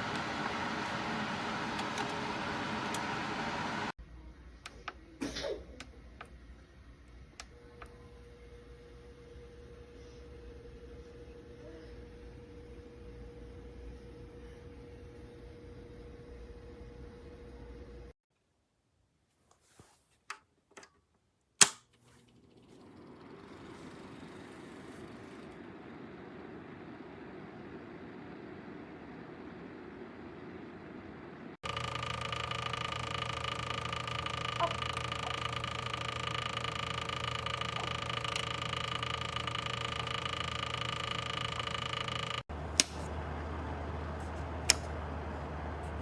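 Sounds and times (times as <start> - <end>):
heater control clicks: 0.0 - 3.9, 21.6 - 21.9, 31.6 - 43.2, 44.5 - 45.1
heater fan blowing: 0.0 - 4.0, 22.6 - 46.0
electrical hum with whine: 0.0 - 5.2, 5.8 - 18.2, 23.6 - 46.0.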